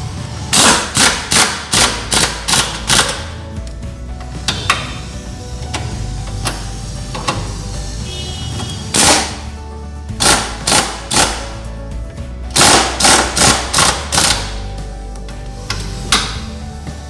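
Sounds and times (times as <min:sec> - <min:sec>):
background music: 0:00.0 - 0:17.0
impact wrench rattling: 0:00.5 - 0:03.5, 0:04.2 - 0:07.7, 0:08.6 - 0:09.6, 0:10.2 - 0:11.6, 0:12.5 - 0:14.8, 0:15.6 - 0:16.6.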